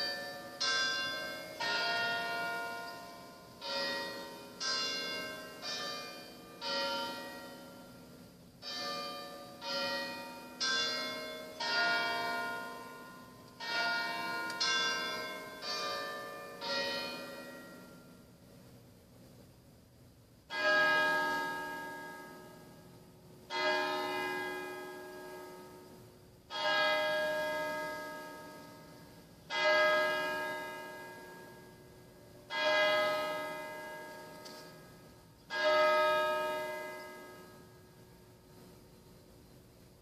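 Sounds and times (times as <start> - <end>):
church bells chiming a tune: 0.0 - 18.4, 20.5 - 39.6.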